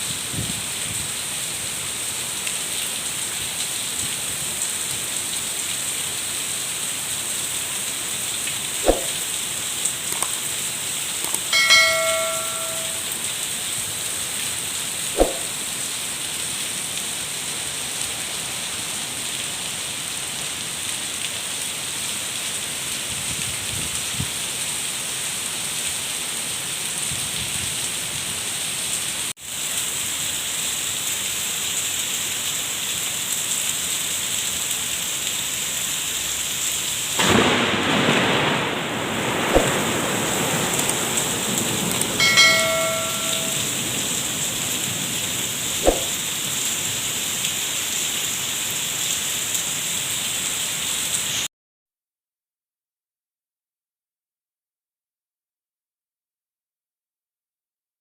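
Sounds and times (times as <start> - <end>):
heavy rain pouring: 0.0 - 51.5
brief multi-tone sound: 11.4 - 13.0, 42.2 - 43.6.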